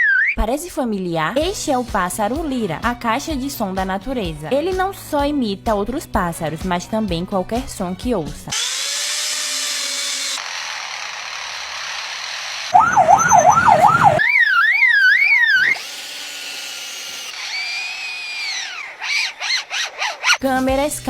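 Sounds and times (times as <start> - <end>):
gliding whistle: 0.0 - 0.4, 12.8 - 15.8
bird mimicking car alarm: 12.8 - 15.7.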